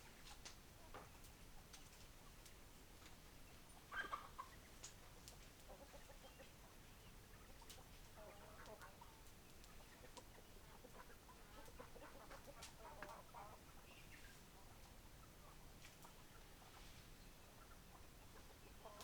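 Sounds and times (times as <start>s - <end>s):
hens clucking: 3.9s - 19.0s.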